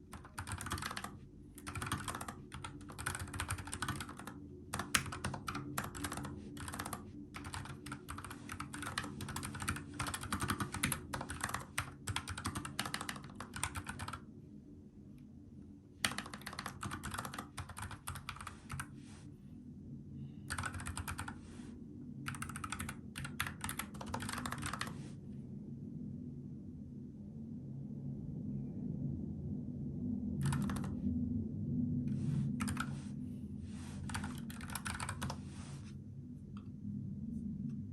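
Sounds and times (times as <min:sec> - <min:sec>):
typing on mechanical keyboard: 0:00.0 - 0:14.2, 0:16.0 - 0:18.9, 0:20.5 - 0:21.5, 0:22.3 - 0:25.1, 0:30.4 - 0:31.0, 0:32.6 - 0:33.0, 0:34.0 - 0:35.5
steady low hum: 0:00.0 - 0:37.9.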